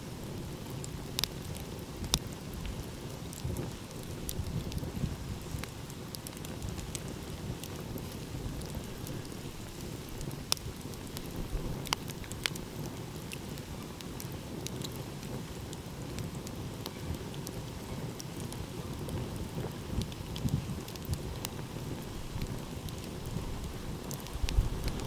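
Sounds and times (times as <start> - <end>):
wood fire crackling: 0.0 - 25.0.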